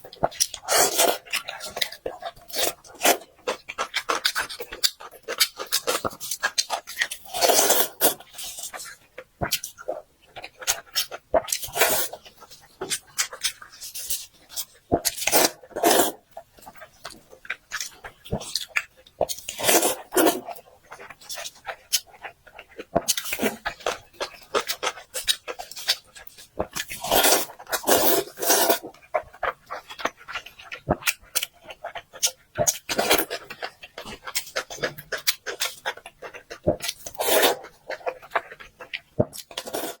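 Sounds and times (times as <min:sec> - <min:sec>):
person chewing food: 0:00.0 - 0:40.0
slurping and sucking: 0:27.0 - 0:28.8, 0:37.1 - 0:37.6, 0:39.6 - 0:40.0
slurp: 0:37.1 - 0:37.7, 0:39.5 - 0:40.0.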